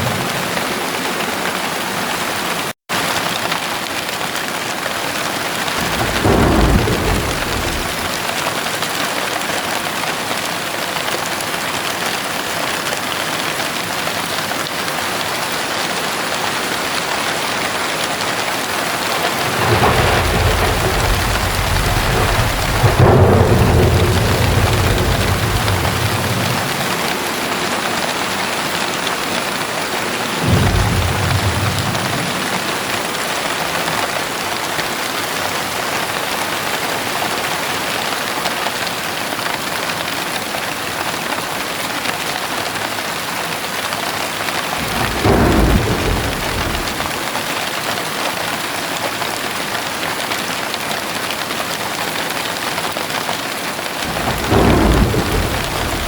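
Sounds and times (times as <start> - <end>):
heavy rain falling: 0.0 - 56.0
thunder rumbling: 5.8 - 8.4, 17.5 - 34.4, 44.4 - 47.2, 54.0 - 56.0.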